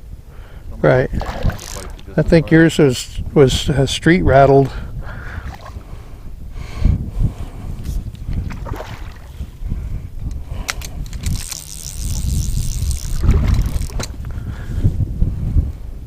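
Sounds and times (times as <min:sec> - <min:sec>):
wind buffeting microphone: 0:00.0 - 0:16.0
sharp clicks: 0:10.3 - 0:14.2.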